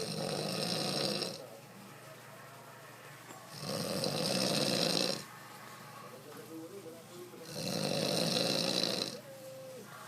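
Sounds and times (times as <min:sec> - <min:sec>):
person snoring: 0:00.0 - 0:01.4, 0:03.5 - 0:05.3, 0:07.4 - 0:09.2.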